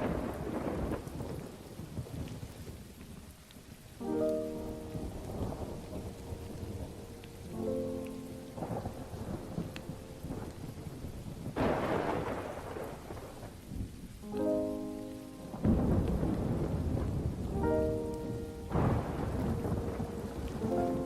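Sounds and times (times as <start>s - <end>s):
sharp thunderclap: 0.0s - 2.4s, 8.6s - 13.9s, 15.5s - 21.0s
rumbling thunder: 0.0s - 2.8s, 4.6s - 14.2s, 15.3s - 21.0s
steady rain: 0.0s - 21.0s.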